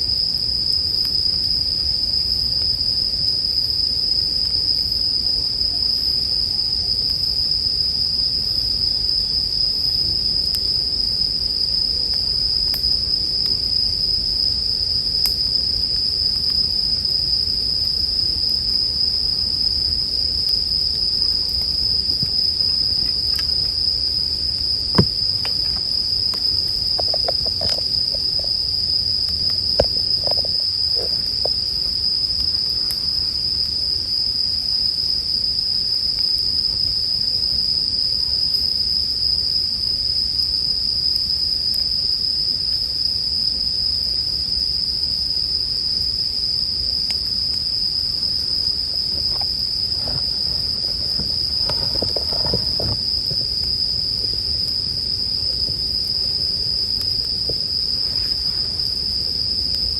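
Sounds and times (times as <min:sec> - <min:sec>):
campfire rumble: 0:00.0 - 0:59.9
crickets trilling: 0:00.0 - 0:59.9
fire crackles and pops: 0:06.8 - 0:33.9, 0:48.2 - 0:59.3.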